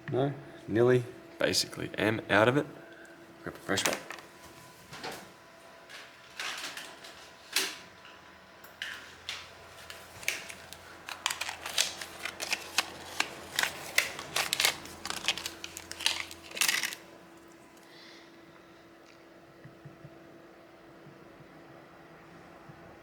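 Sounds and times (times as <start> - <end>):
faint steady hum: 0.0 - 23.0
small tools clicking and scraping: 9.8 - 17.0.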